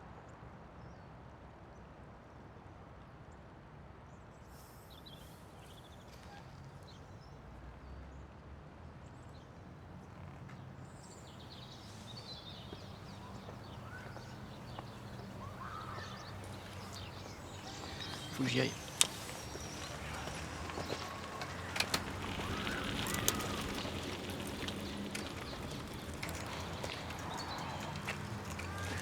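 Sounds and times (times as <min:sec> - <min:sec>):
bird chirps: 0:11.0 - 0:29.0.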